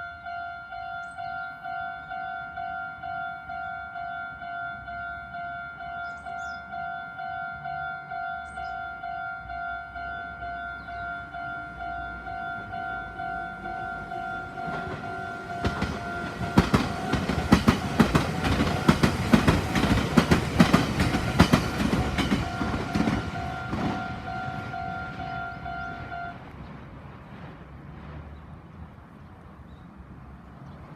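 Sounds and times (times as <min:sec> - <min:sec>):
level-crossing alarm ringing: 0:00.0 - 0:26.4
train wheels clicking over joints: 0:14.4 - 0:24.8.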